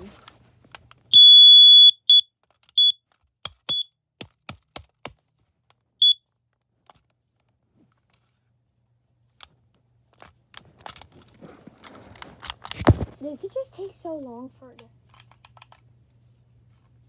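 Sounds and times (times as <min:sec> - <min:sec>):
alarm beeping and chirping: 0:01.2 - 0:02.2.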